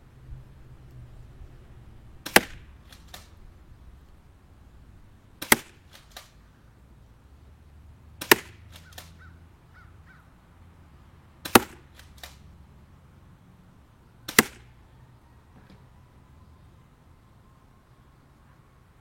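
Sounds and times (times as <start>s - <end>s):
airsoft shotgun shots: 2.2s - 3.4s, 5.4s - 6.4s, 8.2s - 9.2s, 11.4s - 12.4s, 14.3s - 14.7s.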